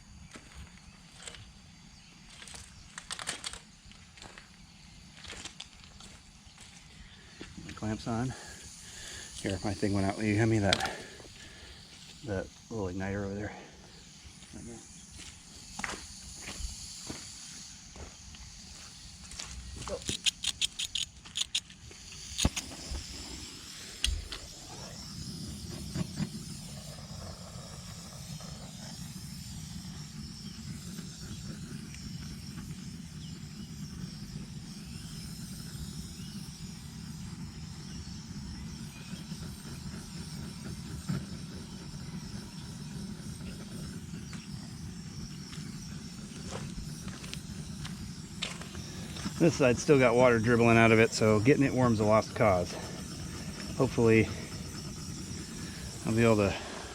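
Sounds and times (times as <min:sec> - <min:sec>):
torch flame hissing: 0:00.0 - 0:56.9
igniter clicks: 0:20.0 - 0:23.0.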